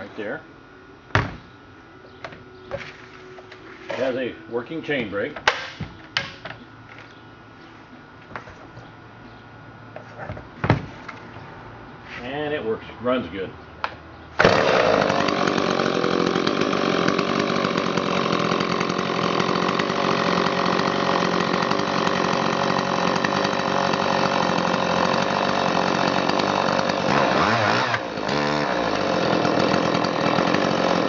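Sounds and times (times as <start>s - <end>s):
chainsaw running and revving: 14.4s - 31.0s.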